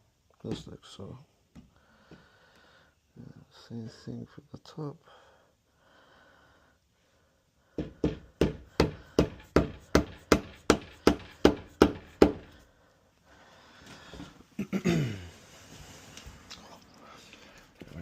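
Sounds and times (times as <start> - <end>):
hammer striking chisel into wood: 7.8 - 12.6.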